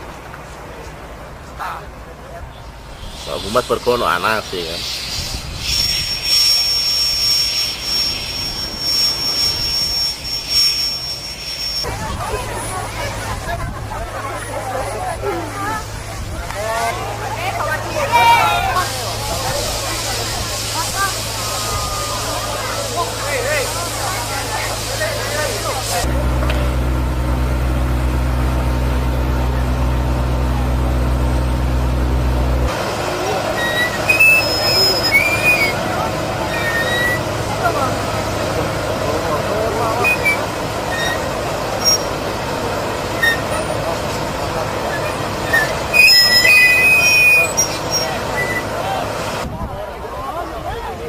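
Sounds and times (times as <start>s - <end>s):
low engine drone: 0.0s - 49.4s
rushing hiss: 2.8s - 12.0s, 18.8s - 26.1s
high-pitched machine whine: 3.0s - 13.0s
low rumble: 26.0s - 33.1s.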